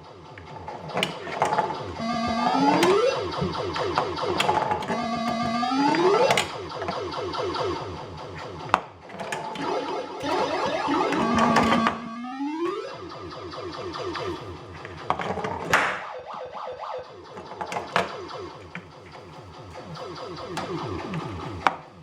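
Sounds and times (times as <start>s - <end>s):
pulsing synthesized tones: 0.0s - 22.0s
upward-sweeping sound effects: 1.7s - 8.0s, 9.6s - 14.8s.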